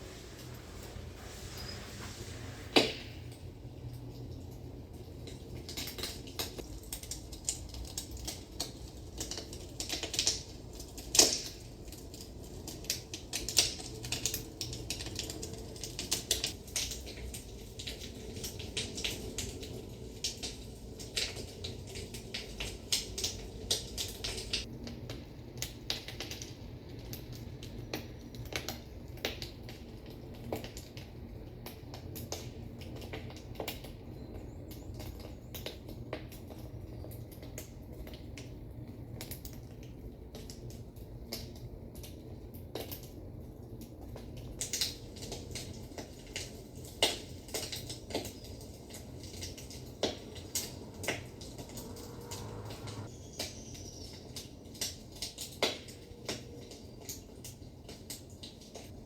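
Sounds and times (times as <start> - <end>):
low hum: 0.0 - 3.7, 50.2 - 53.1
firewood crackling and popping: 0.0 - 59.0.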